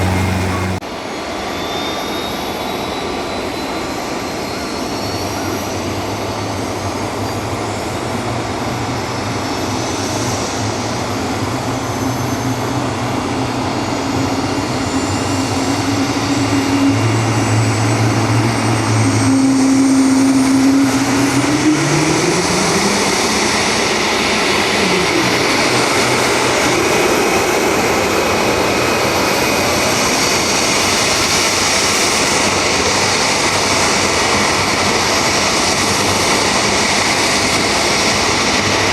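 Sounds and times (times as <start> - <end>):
low rotor hum: 0.0 - 0.8
helicopter turbine whine: 0.0 - 38.9.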